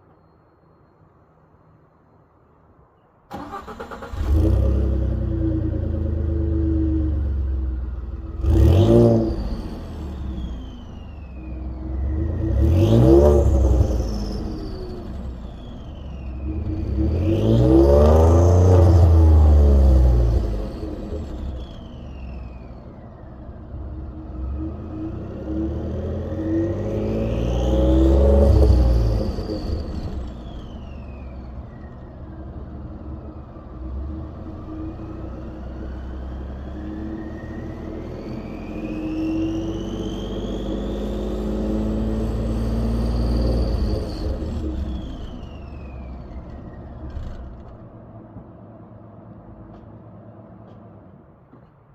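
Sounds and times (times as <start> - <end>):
engine revving: 3.3 - 22.9, 23.6 - 31.5, 33.5 - 47.8
turbochargers whistling: 8.3 - 23.2, 26.3 - 32.3, 36.0 - 47.0.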